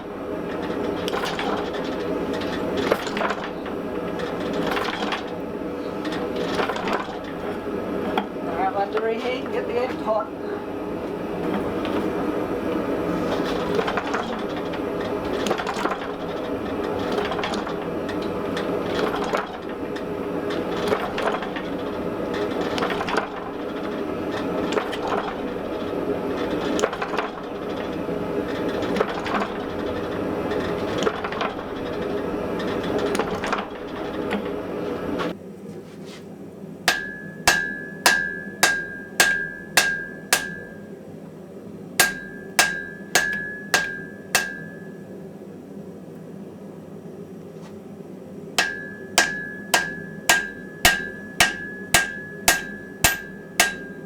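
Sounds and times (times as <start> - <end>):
gas forge roaring: 0.0 - 54.0
hammer ringing on anvil: 36.9 - 40.9, 42.0 - 45.1, 48.6 - 54.0.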